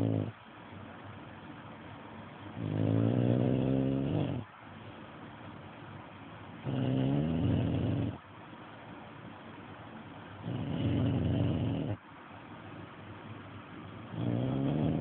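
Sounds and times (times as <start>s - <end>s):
pet snoring: 0.0s - 0.4s, 2.6s - 4.5s, 6.6s - 8.2s, 10.4s - 12.0s, 14.1s - 15.0s.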